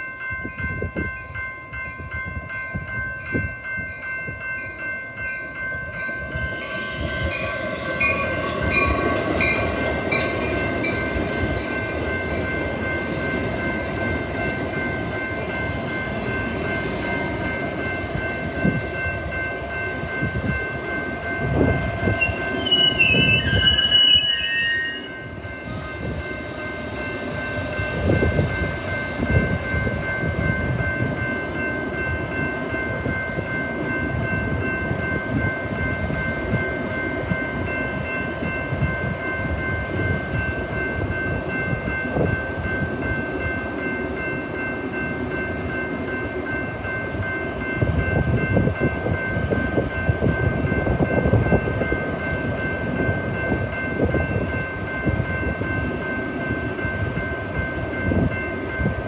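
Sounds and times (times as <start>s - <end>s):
high-pitched ringing tones: 2.8s - 44.0s
train wheels clattering on rails: 5.7s - 59.0s.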